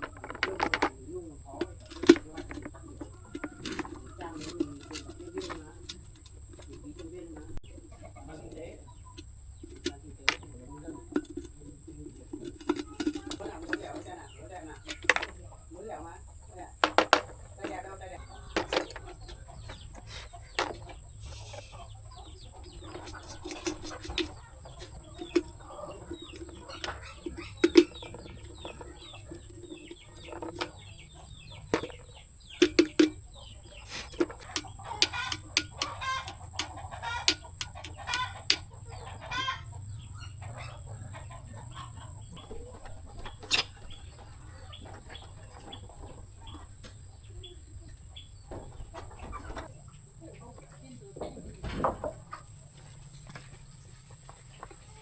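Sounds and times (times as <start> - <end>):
sharp clicks and knocks: 0.0 - 15.4, 16.8 - 17.8, 18.5 - 21.0, 22.6 - 38.7
chickens clucking: 0.0 - 55.0.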